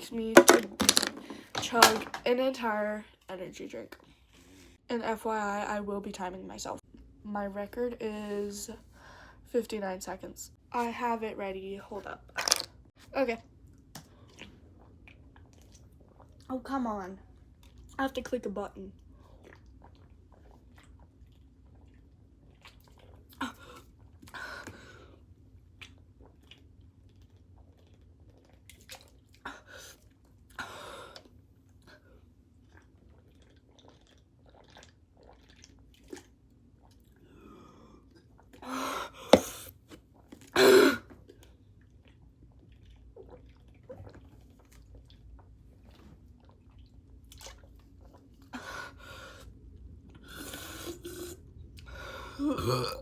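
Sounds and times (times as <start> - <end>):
person gulping drink: 12.4 - 12.7, 32.6 - 48.5, 50.0 - 53.0.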